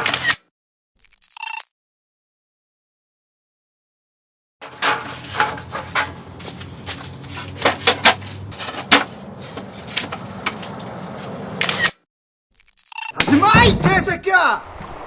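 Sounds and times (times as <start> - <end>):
hard objects clattering: 4.6 - 11.4.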